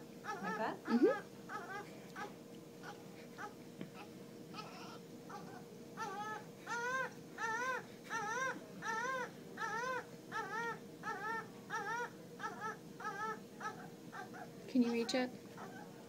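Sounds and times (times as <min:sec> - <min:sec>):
faint steady hum: 0:00.0 - 0:16.0
newborn baby crying: 0:00.2 - 0:13.8.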